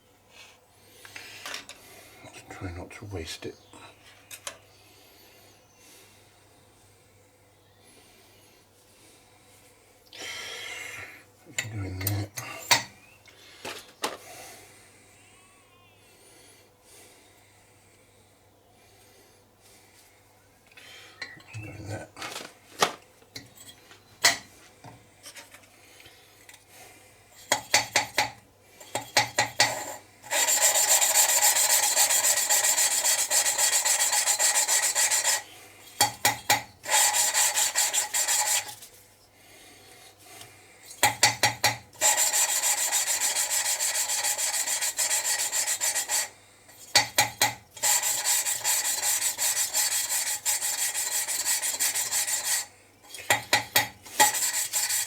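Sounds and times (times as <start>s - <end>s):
gritty rasping of valve grinding: 27.4s - 38.9s, 40.9s - 55.0s.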